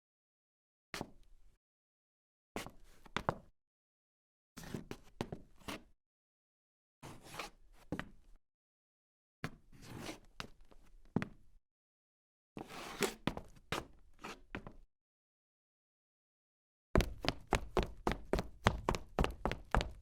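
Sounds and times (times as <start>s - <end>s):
woman's footsteps: 17.0s - 20.0s.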